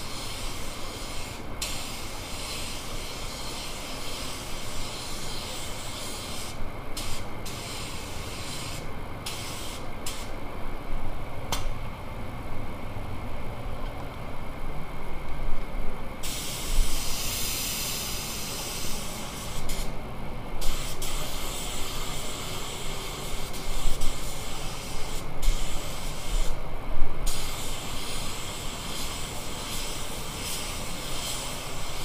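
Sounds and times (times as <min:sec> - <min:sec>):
air spray gun hissing: 0:00.0 - 0:10.4, 0:16.2 - 0:20.0, 0:20.6 - 0:26.6, 0:27.2 - 0:32.0.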